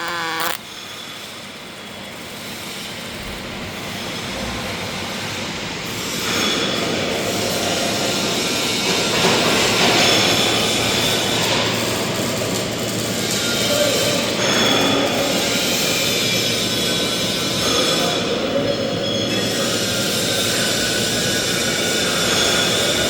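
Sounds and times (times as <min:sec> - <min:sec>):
welding hiss and crackle: 0:00.0 - 0:00.6.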